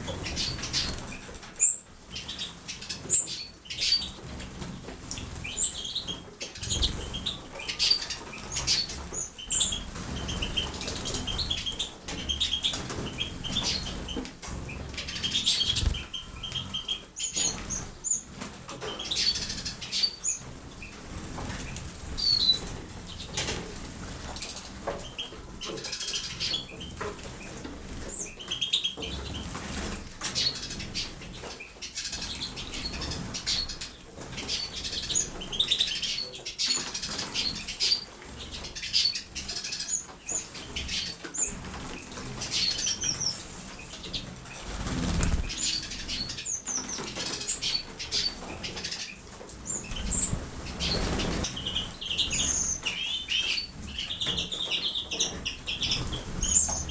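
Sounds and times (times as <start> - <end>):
bird wing flutters: 15.6 - 16.1, 44.0 - 46.4, 49.9 - 51.6.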